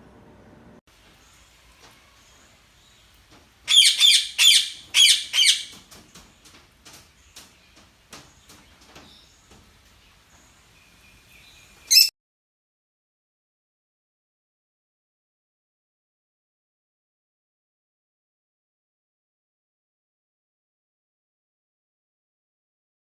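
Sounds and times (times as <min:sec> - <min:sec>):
birds chirping: 0:01.0 - 0:12.1.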